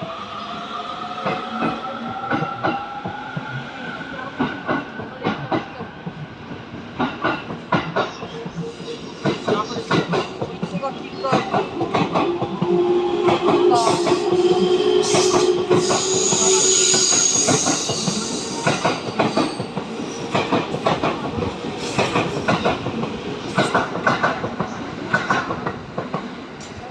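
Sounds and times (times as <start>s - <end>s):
train wheels clattering over rail joints: 15.0s - 26.9s.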